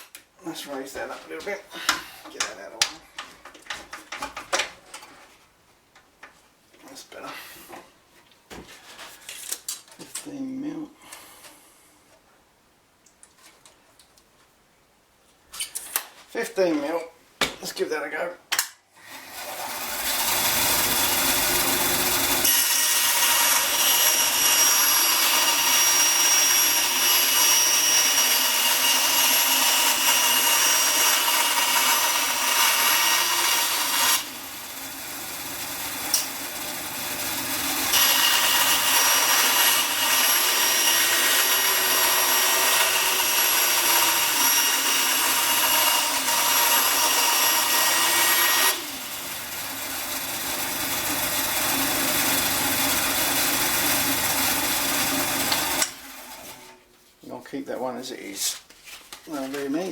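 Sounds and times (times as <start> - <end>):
table saw cutting wood: 19.1 - 56.8.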